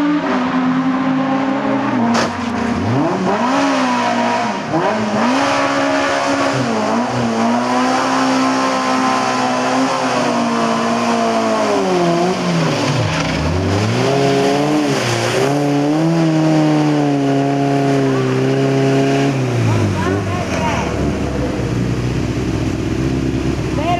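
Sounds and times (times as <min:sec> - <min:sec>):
race car engine revving: 0:00.0 - 0:23.9.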